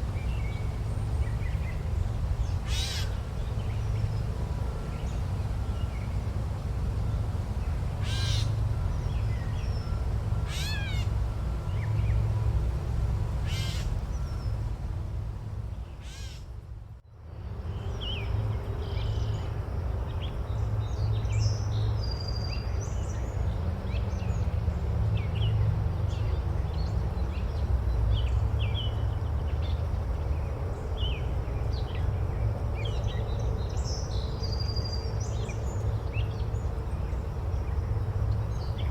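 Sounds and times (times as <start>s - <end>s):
bird cawing: 2.7s - 3.1s, 8.0s - 8.5s, 10.4s - 11.2s, 13.4s - 14.0s, 16.0s - 16.4s.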